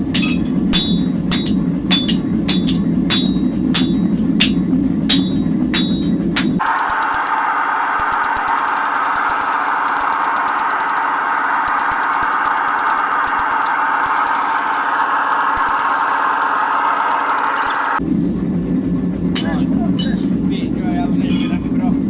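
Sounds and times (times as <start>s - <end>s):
power grinder grinding metal: 6.6s - 18.0s.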